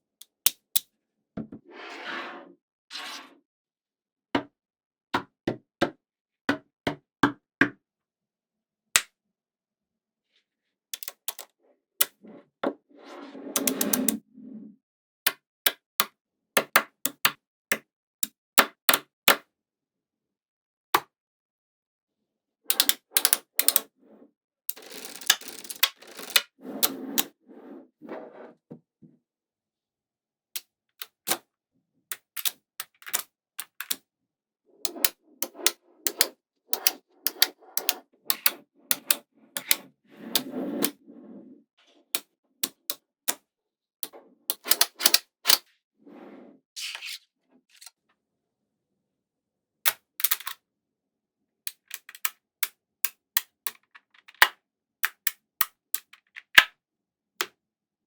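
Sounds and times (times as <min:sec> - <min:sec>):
magnetic balls clicking together: 0:24.7 - 0:26.4.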